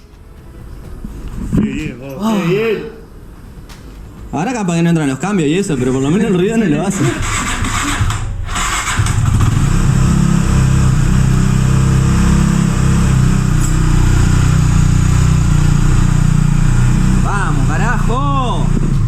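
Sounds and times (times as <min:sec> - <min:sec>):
motorcycle engine running: 0:06.9 - 0:19.0.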